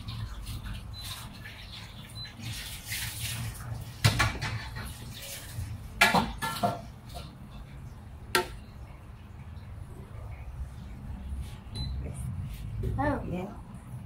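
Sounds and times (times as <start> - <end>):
low steady hum: 5.6 - 14.0.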